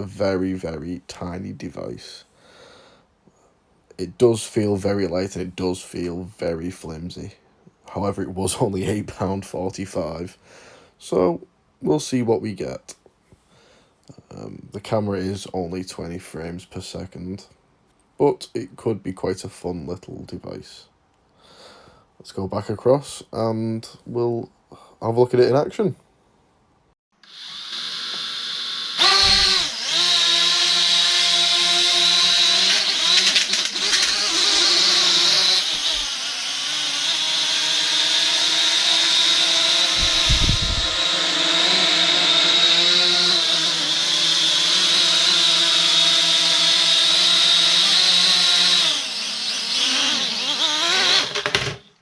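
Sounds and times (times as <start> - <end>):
drone motors whining: 27.2 - 47.6, 48.2 - 51.5.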